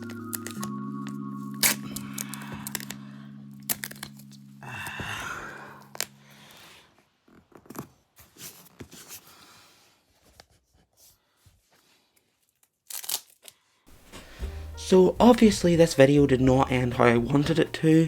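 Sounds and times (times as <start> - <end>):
packaging clicks and crinkles: 0.0 - 3.0, 3.6 - 4.4, 12.5 - 13.6
background music: 0.0 - 6.8, 13.9 - 18.0.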